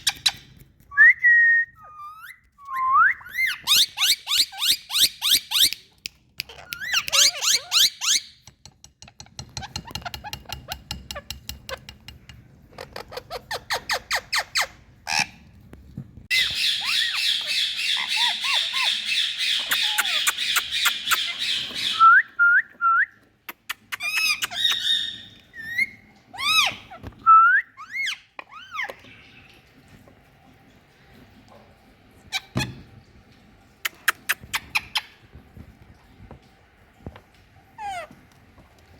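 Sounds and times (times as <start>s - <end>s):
parrot calling and chattering: 3.2s - 8.4s, 16.3s - 22.0s, 23.5s - 27.1s, 27.8s - 29.3s, 33.8s - 35.2s, 37.8s - 38.2s.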